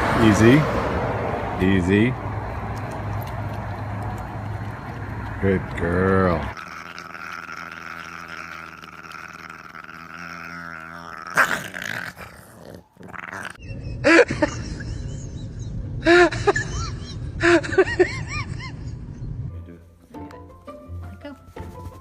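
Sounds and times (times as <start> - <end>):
dog growling: 3.0 - 13.7.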